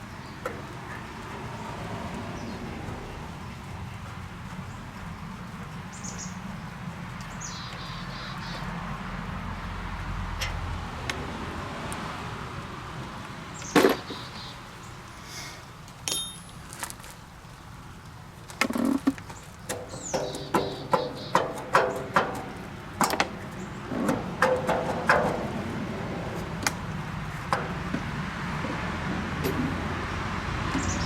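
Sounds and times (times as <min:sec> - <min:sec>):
tools and metal parts clinking: 0:16.0 - 0:17.2
loud metal clank: 0:16.1 - 0:16.7.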